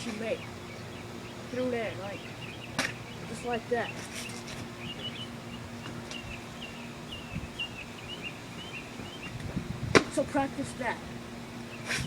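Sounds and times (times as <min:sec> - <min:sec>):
low steady hum: 0:00.0 - 0:12.0
small birds chirping: 0:00.0 - 0:12.0.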